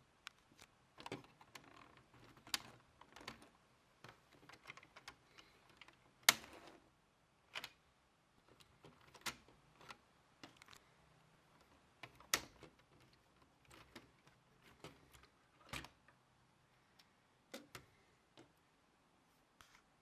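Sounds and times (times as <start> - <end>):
plastic parts clicking: 0.2 - 6.8, 8.4 - 10.8, 11.5 - 16.2, 17.0 - 18.6.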